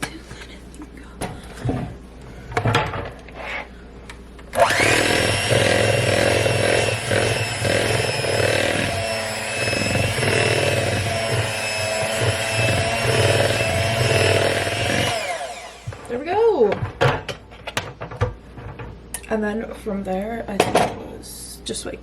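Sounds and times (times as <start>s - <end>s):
electric mixer motor whine: 4.5s - 16.2s.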